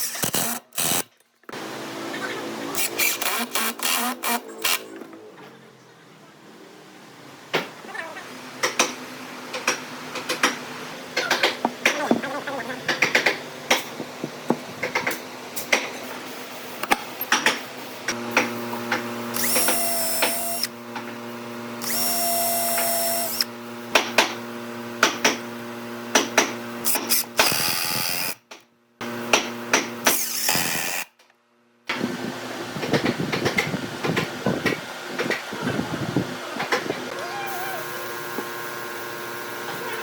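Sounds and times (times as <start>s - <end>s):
power tool whining: 0.0s - 5.2s, 18.1s - 23.6s, 26.8s - 28.4s, 30.0s - 31.1s, 37.1s - 40.0s.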